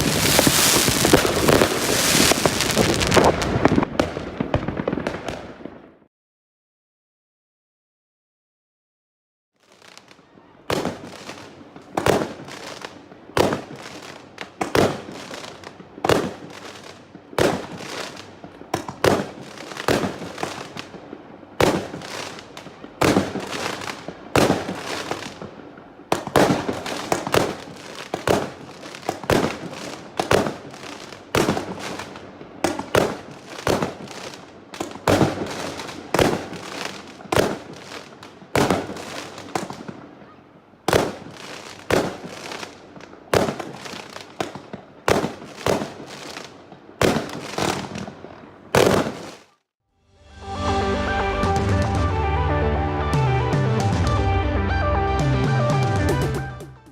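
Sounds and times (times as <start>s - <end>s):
firework crackling: 0.0s - 6.0s, 9.6s - 40.3s, 40.9s - 49.6s
firework bangs: 0.0s - 6.1s, 9.8s - 49.6s.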